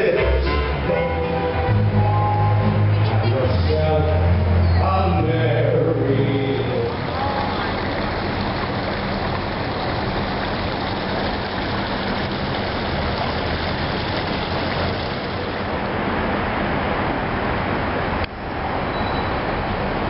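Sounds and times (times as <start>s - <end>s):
engine humming: 0.0s - 20.0s
broad rushing noise: 6.3s - 20.0s.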